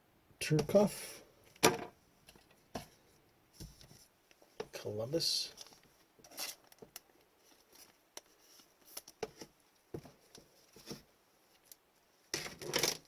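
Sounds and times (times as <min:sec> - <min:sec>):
card and plastic rustling: 0:05.5 - 0:09.4.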